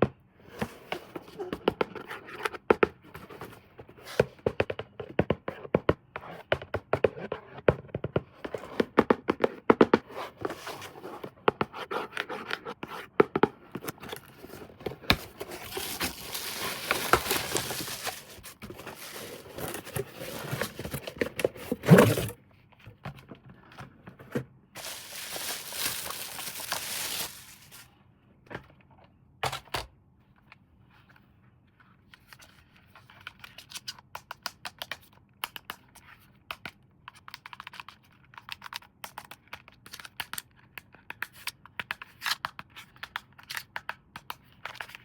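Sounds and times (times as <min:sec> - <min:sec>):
toy packaging clicking and crinkling: 0:14.2 - 0:21.2, 0:24.8 - 0:27.9.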